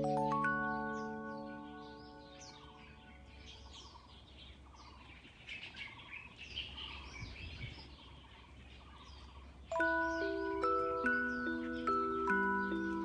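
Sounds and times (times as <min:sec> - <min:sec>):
chime-like slow melody: 0:00.0 - 0:03.5, 0:09.7 - 0:13.0
birds chirping: 0:00.0 - 0:13.0.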